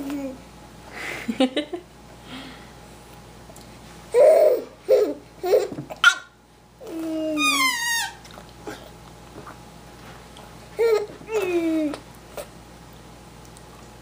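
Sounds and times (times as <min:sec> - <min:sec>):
baby babbling: 0:10.8 - 0:12.0
baby cooing: 0:10.8 - 0:12.0.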